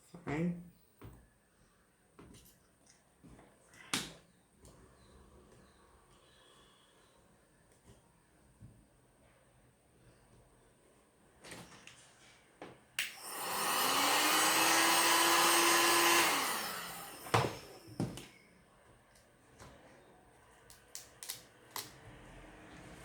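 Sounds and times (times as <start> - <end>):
hot-air blower whining: 13.0 - 18.3.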